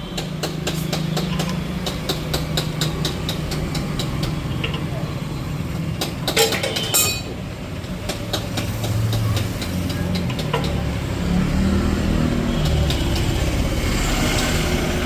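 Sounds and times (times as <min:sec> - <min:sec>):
vehicle engine running: 0:00.0 - 0:06.2.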